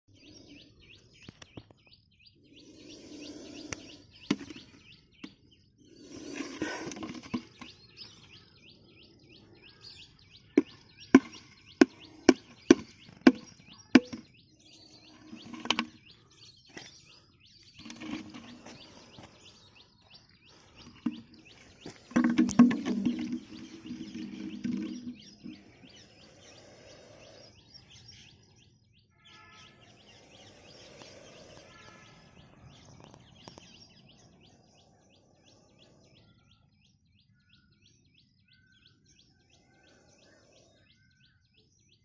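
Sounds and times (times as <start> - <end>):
birds chirping: 0.0 - 42.0.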